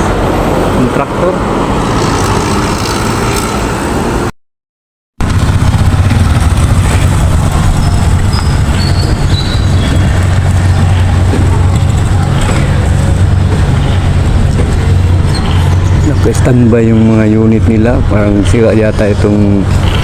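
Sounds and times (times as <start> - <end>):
low rumble: 5.2 - 20.0.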